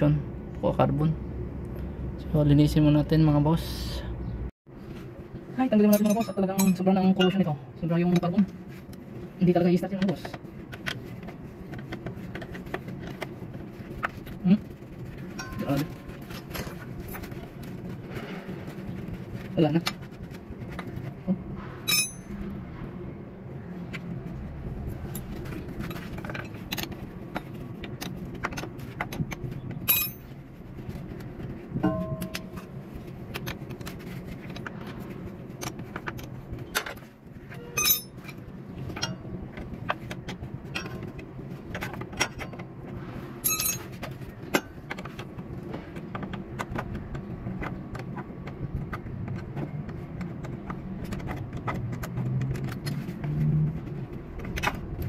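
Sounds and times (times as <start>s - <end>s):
steady low hum: 0.0s - 55.0s
metal tools clinking and scraping: 5.8s - 7.4s, 15.3s - 17.3s, 21.8s - 22.4s, 29.8s - 30.4s, 31.8s - 32.8s, 37.5s - 39.3s, 43.4s - 44.7s
loud metallic clinks: 21.9s - 22.4s, 37.7s - 38.2s, 43.4s - 43.8s.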